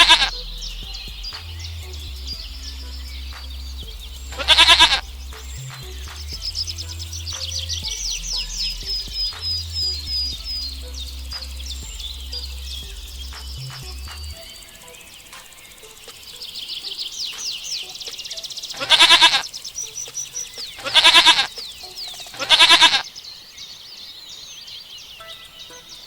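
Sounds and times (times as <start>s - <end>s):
goat bleating: 0.0s - 0.3s, 4.4s - 5.0s, 18.8s - 19.4s, 20.8s - 21.5s, 22.4s - 23.0s
high bird chirps: 0.0s - 26.0s.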